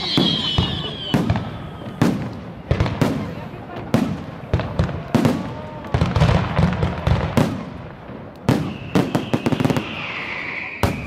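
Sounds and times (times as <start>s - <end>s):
high whistle: 0.0s - 2.0s, 8.6s - 11.0s
fireworks bangs with echo: 0.0s - 11.0s
fireworks crackling: 0.0s - 11.0s.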